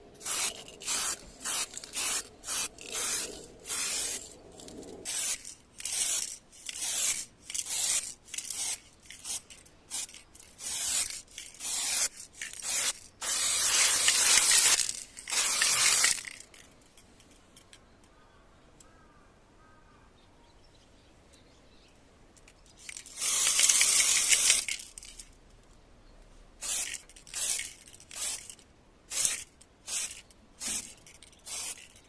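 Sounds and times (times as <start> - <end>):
aerosol spray can hissing: 0.2 - 4.3, 5.1 - 16.4, 23.1 - 24.7, 26.6 - 28.5, 29.1 - 31.9.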